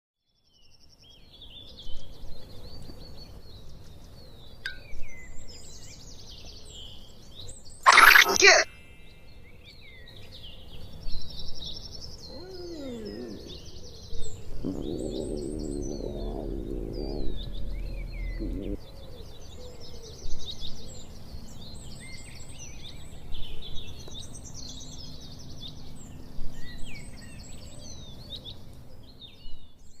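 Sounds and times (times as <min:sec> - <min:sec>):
birds chirping: 0:07.9 - 0:08.6, 0:12.0 - 0:19.4
growling stomach rumble: 0:12.3 - 0:19.0.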